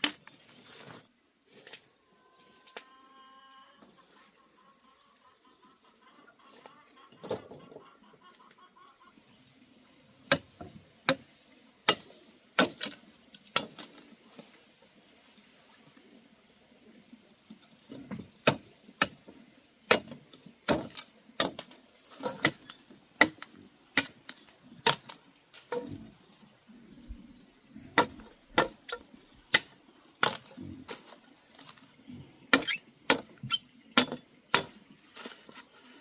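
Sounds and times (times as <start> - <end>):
blade chopping plant stalks: 11.9 - 13.9, 19.9 - 26.0, 28.0 - 31.8, 32.5 - 36.0.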